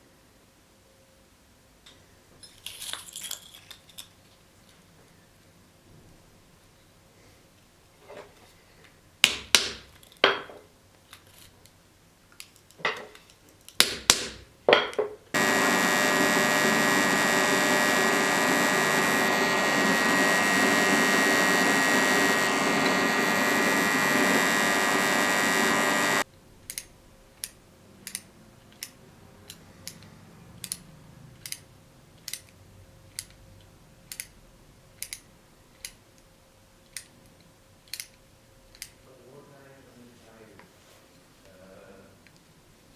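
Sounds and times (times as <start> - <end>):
small electric power tool running: 15.4 - 26.2.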